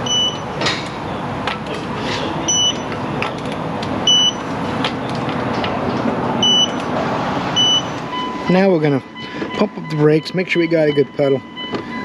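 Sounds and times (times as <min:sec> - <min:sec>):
high electronic beeps: 0:00.0 - 0:00.6, 0:02.4 - 0:02.9, 0:04.0 - 0:04.5, 0:06.4 - 0:06.8, 0:07.6 - 0:12.0
steady background noise: 0:00.0 - 0:12.0.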